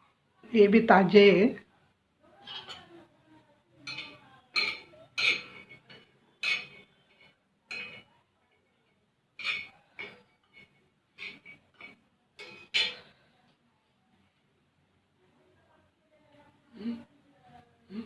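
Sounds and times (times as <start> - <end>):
dishes clinking: 2.4 - 3.1, 3.8 - 13.3.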